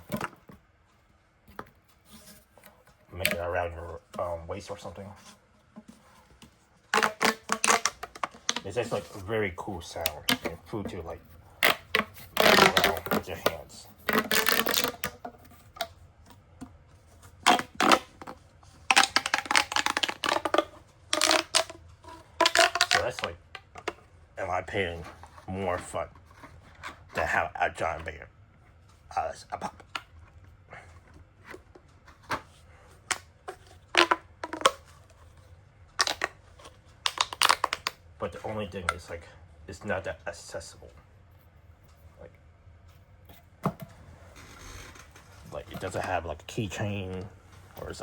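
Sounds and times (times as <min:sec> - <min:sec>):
plastic pop tubes clicking: 0:06.9 - 0:08.7, 0:11.6 - 0:16.0, 0:17.4 - 0:21.8, 0:22.4 - 0:24.0, 0:33.1 - 0:34.9, 0:35.9 - 0:38.0.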